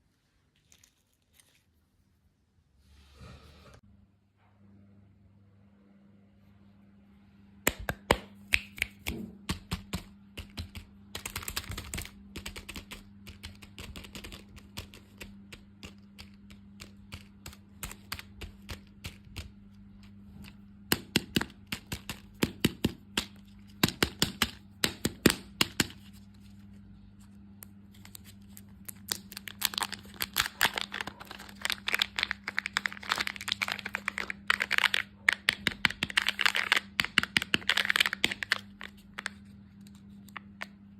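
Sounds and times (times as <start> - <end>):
faint steady hum: 0.0 - 40.9
candy crackling: 9.7 - 20.5, 21.4 - 40.6.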